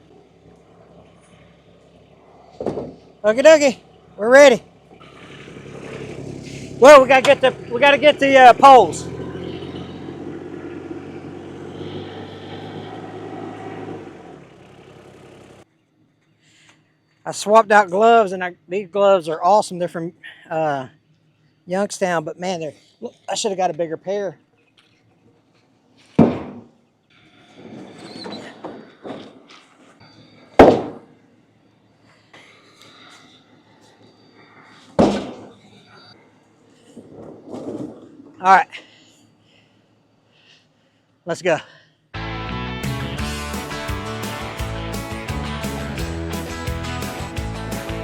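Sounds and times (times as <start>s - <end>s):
engine running: 0.0s - 15.6s, 42.2s - 48.0s.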